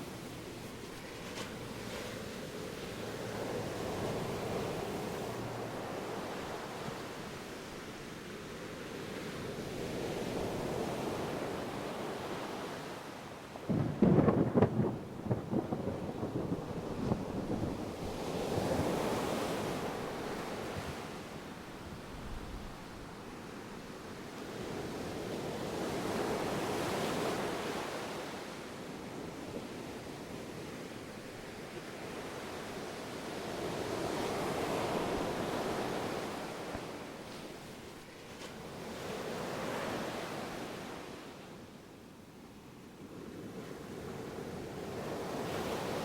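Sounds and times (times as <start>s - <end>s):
ocean surf wave: 0.0s - 14.4s, 17.4s - 41.8s, 43.4s - 46.0s
distant thunder rumbling: 13.7s - 17.9s.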